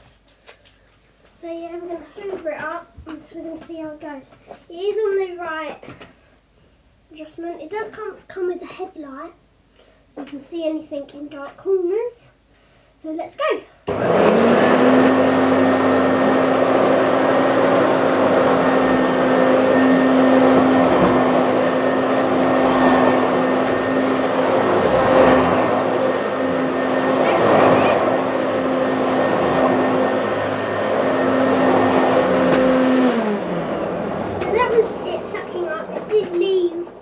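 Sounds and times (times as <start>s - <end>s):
vacuum cleaner running: 13.9s - 37.0s
vacuum motor winding down: 13.9s - 37.0s.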